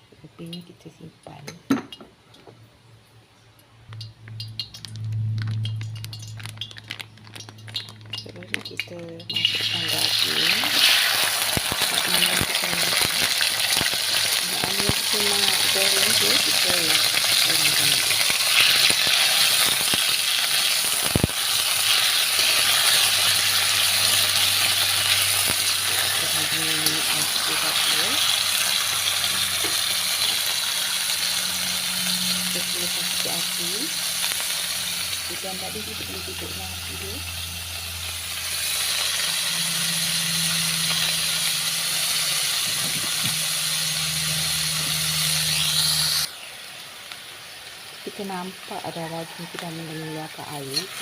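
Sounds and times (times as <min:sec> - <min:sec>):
low hum: 0:02.8 - 0:10.8, 0:22.3 - 0:46.3
beef sizzling in hot oil: 0:04.0 - 0:51.0
meat frying in a pan: 0:04.0 - 0:51.0.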